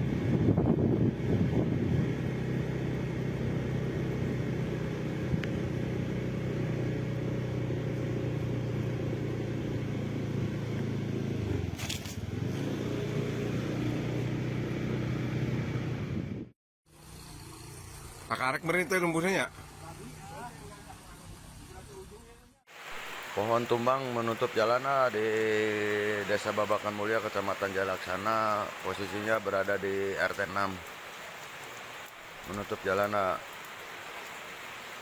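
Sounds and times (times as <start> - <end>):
engine humming steadily: 0.0 - 18.3.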